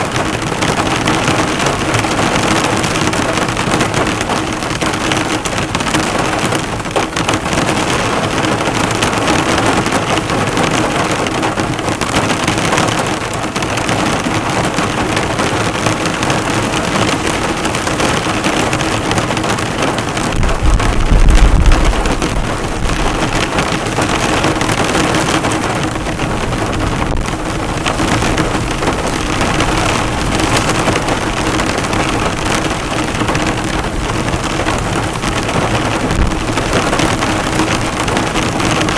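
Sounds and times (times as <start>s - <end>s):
heavy rain pelting a car: 0.0s - 38.9s
low rumble: 20.4s - 23.4s.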